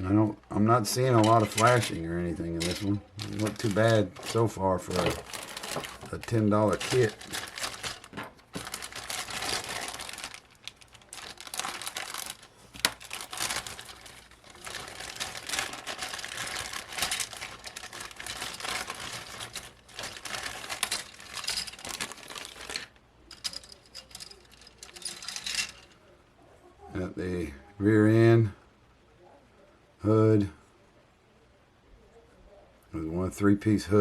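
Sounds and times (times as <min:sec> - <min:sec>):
plastic bags crinkling: 0:00.6 - 0:26.0
plastic parts clicking and rattling: 0:00.9 - 0:26.0.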